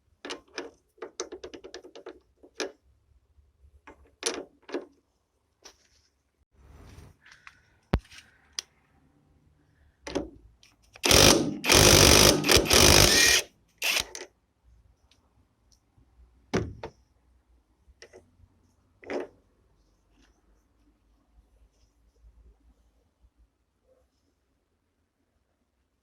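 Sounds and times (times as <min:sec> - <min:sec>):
tools clicking and knocking: 0:00.2 - 0:02.8
loud noisy tool burst: 0:11.0 - 0:14.0.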